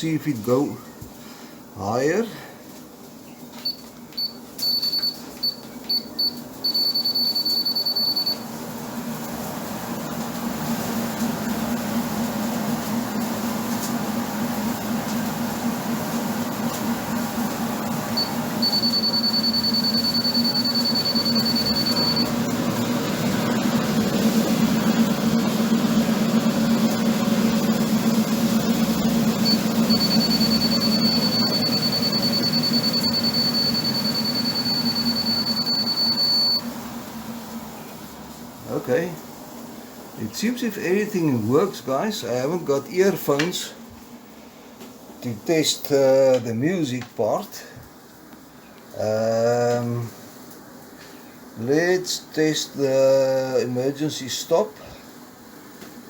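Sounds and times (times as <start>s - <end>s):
treadmill motor and belt humming: 3.0s - 40.1s
treadmill console beeping: 3.6s - 8.6s, 16.6s - 36.7s.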